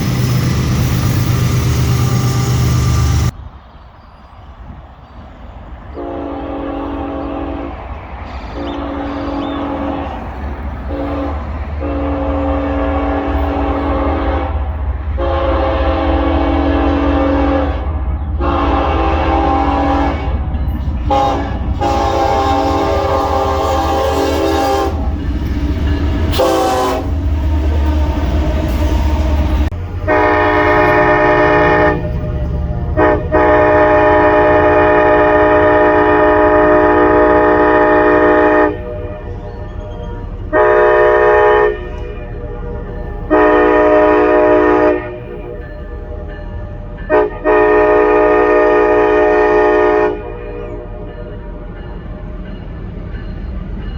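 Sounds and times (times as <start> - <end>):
locomotive air horn blasts: 6.0 - 7.7, 10.9 - 14.6, 15.2 - 20.4, 21.0 - 25.2, 26.1 - 51.7.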